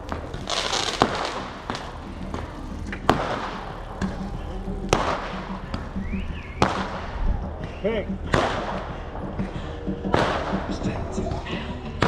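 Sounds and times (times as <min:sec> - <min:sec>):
faint fireworks pops: 0:00.0 - 0:09.0
fireworks bangs: 0:00.0 - 0:09.0.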